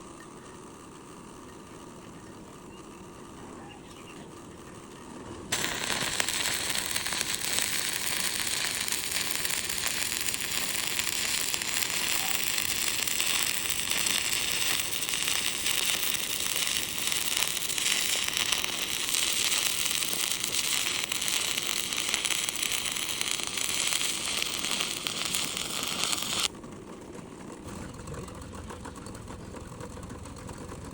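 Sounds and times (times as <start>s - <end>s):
welding arc crackling: 5.5s - 26.5s.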